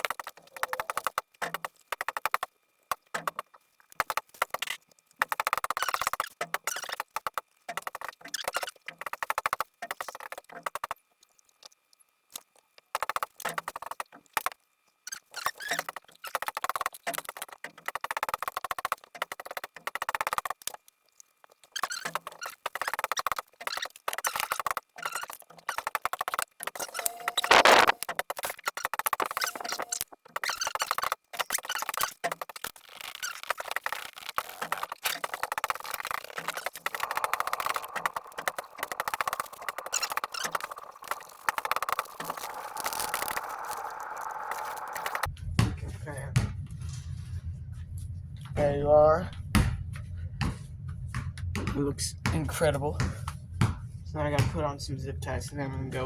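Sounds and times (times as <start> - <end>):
cleaning wipe squeaking on fan: 15.0 - 16.6, 21.7 - 25.9, 28.6 - 45.3.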